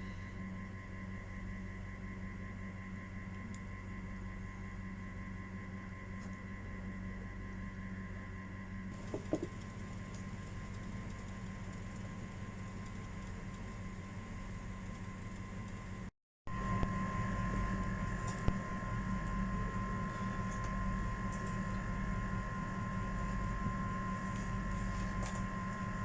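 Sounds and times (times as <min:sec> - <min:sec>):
steady hum with held tones: 0:00.0 - 0:26.0
quick knocks: 0:09.1 - 0:09.5.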